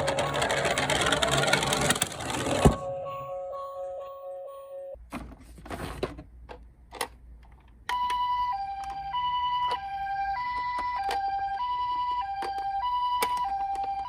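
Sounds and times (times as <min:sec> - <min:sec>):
two-tone ambulance siren: 0:00.0 - 0:05.0, 0:07.9 - 0:14.0.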